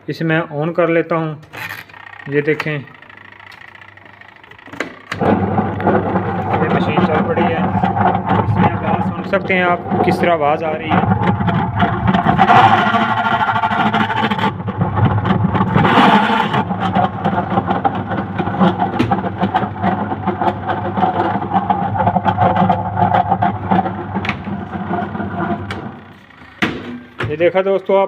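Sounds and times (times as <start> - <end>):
fast ticking rattle: 1.5 - 14.5
washing machine motor humming: 1.5 - 27.6.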